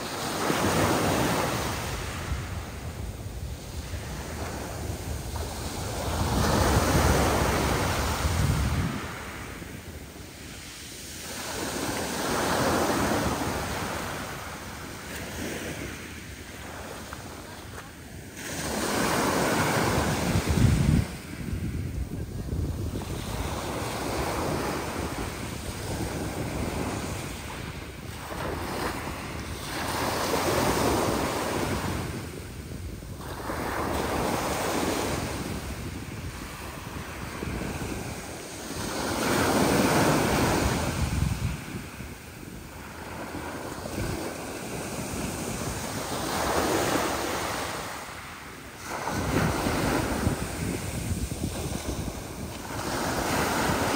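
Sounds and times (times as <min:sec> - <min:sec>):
sea waves breaking: 0:00.0 - 0:53.9
wind buffeting microphone: 0:00.0 - 0:53.9.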